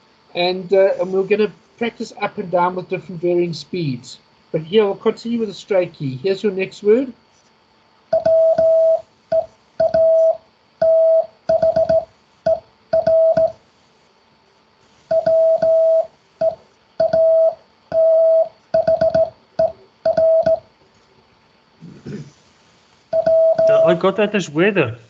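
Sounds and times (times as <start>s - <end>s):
morse code beeping: 8.1s - 13.6s, 15.1s - 20.7s, 23.2s - 24.2s.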